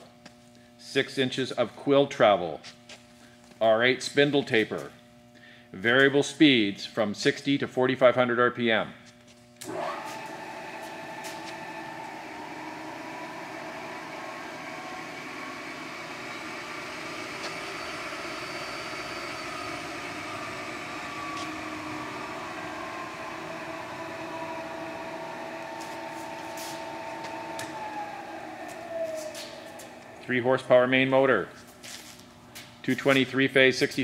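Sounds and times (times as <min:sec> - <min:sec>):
milling machine whine: 0:09.6 - 0:31.4.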